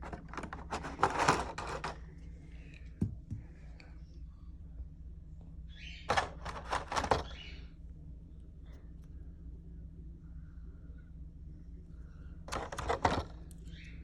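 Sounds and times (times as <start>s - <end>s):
packaging clicks and rustling: 0.0s - 2.0s.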